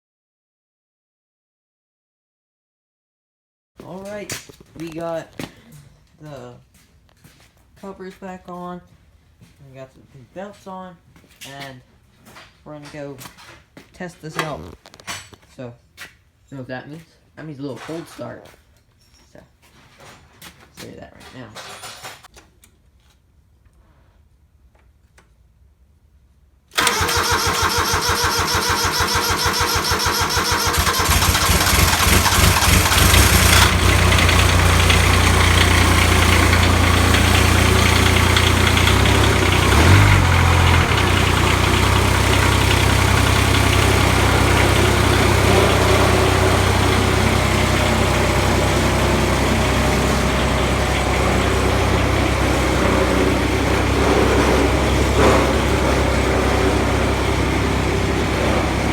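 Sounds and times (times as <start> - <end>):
diesel engine starting and running: 26.7 - 58.9.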